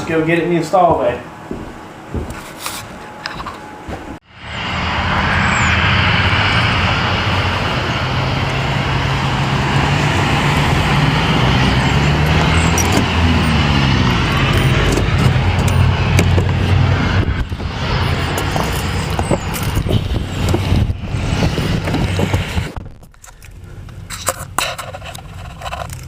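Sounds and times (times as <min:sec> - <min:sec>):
vehicle engine humming: 0:02.9 - 0:26.0
tyre and wind noise: 0:05.4 - 0:26.0.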